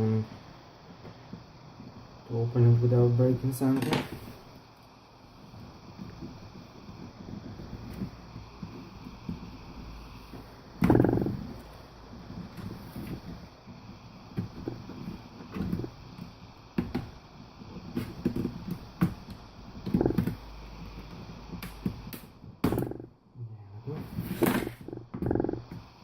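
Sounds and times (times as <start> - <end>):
plastic case creaking and scraping: 10.8 - 13.4, 19.8 - 20.4, 24.0 - 25.8.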